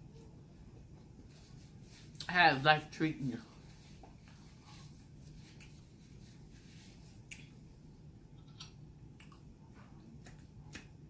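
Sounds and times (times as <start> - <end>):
low steady hum: 0.0 - 11.0
chewing clicks and smacks: 9.1 - 11.0.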